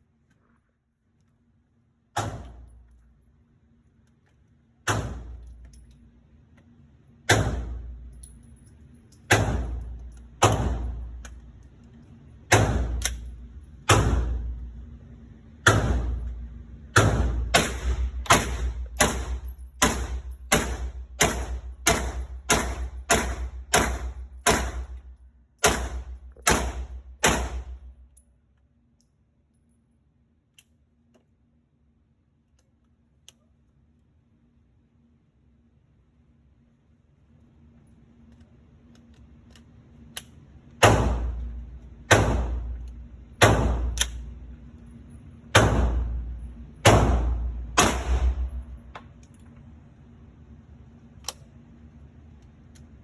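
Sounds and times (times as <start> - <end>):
pistol shots echoing: 17.0 - 25.0, 25.6 - 27.8, 46.9 - 48.6.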